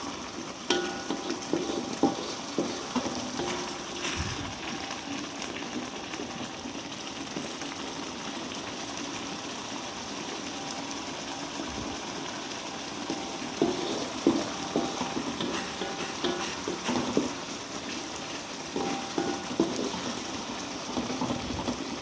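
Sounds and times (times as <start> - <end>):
paste sizzling in a pan: 0.0 - 22.0
spatula knocking against pan: 0.7 - 4.2, 13.0 - 21.8.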